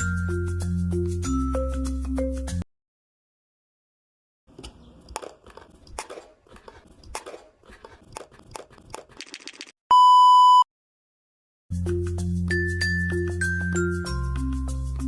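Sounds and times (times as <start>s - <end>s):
crunchy clicks and taps: 4.5s - 9.4s
electronic beep tone: 9.9s - 10.7s.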